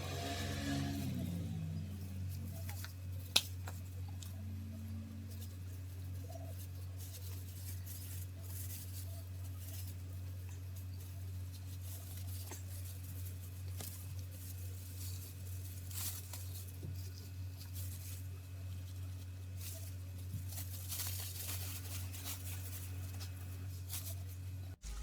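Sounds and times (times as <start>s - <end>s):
steady low hum: 0.0s - 25.0s
hair rustling and scratching: 5.1s - 25.0s.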